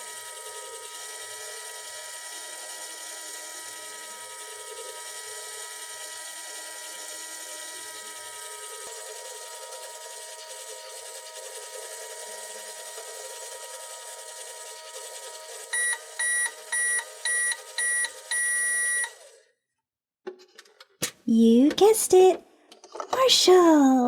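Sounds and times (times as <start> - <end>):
toy microwave humming: 0.0 - 19.5
microwave beeps: 15.7 - 19.2.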